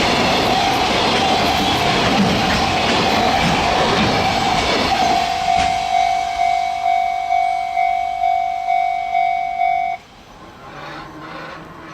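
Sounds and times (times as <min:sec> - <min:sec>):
level crossing bell ringing: 0:05.0 - 0:10.0.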